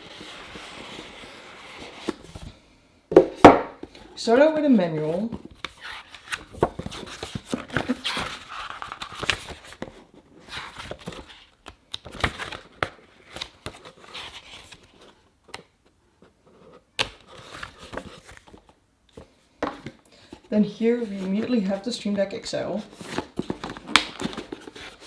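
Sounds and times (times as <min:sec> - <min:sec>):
paper and cardboard rustling: 0:00.0 - 0:02.6, 0:03.8 - 0:15.3, 0:16.2 - 0:22.0, 0:22.8 - 0:25.0.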